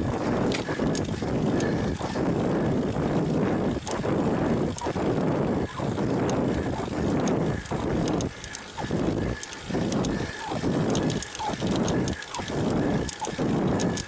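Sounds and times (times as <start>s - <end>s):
bicycle riding rushing noise: 0.0s - 14.0s
faint light ticks: 0.5s - 2.2s, 3.8s - 4.0s, 4.7s - 5.0s, 6.2s - 14.0s.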